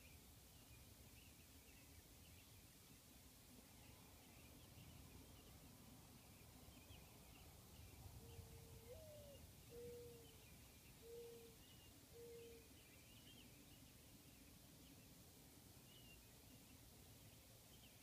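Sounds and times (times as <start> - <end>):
small birds chirping: 0.0 - 18.0
mourning dove cooing: 8.2 - 10.4, 11.0 - 12.7.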